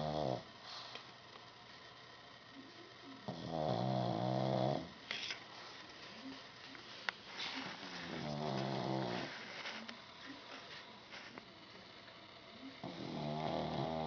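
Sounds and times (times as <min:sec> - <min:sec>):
dog snoring: 0:00.0 - 0:00.5, 0:03.2 - 0:05.0, 0:07.9 - 0:09.6, 0:12.8 - 0:14.0.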